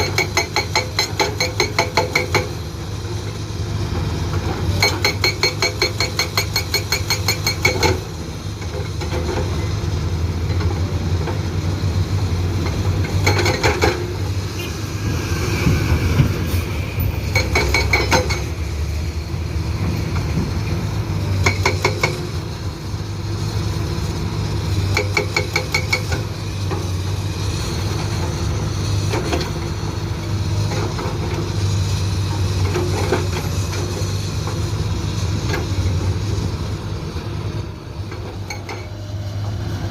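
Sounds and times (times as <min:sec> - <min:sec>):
hydraulic breaker hammering rock: 0:00.0 - 0:02.6, 0:04.4 - 0:09.5, 0:12.6 - 0:14.2, 0:17.3 - 0:18.6, 0:21.3 - 0:22.4, 0:24.8 - 0:26.9
diesel engine running: 0:00.0 - 0:39.9.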